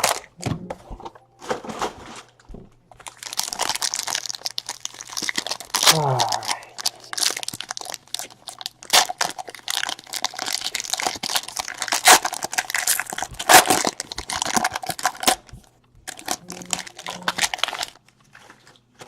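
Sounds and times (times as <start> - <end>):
wrapper being torn and crumpled: 0.0 - 0.4, 1.4 - 15.5, 16.1 - 19.0.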